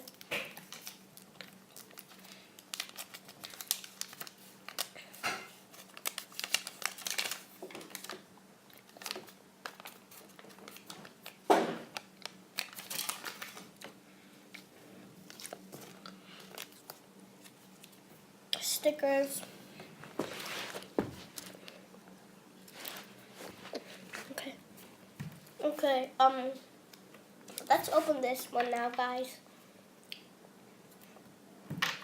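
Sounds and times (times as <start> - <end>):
plastic crinkling and clicking: 0.0 - 14.0.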